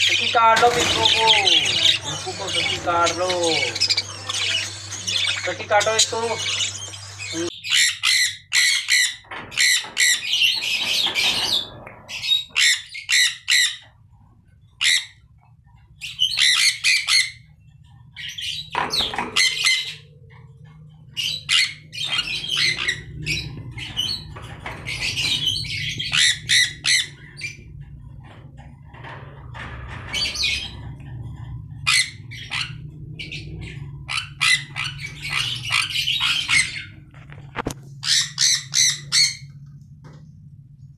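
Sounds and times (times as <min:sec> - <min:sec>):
budgerigars squawking: 0:00.0 - 0:07.8.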